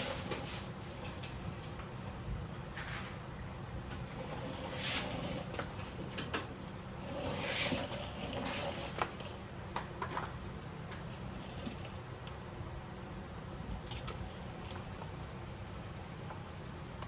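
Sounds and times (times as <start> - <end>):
parts scraping and shuffling: 0.0 - 12.0
steady low hum: 0.0 - 17.0.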